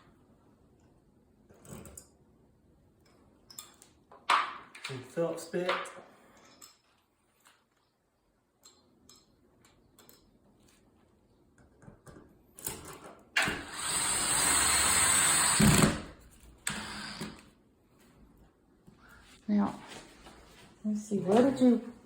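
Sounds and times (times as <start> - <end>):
power drill driving screw: 13.4 - 17.5.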